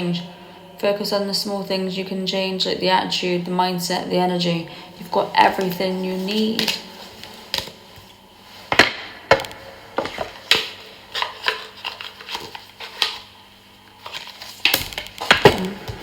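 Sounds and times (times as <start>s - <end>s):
cards being shuffled: 5.5s - 13.3s.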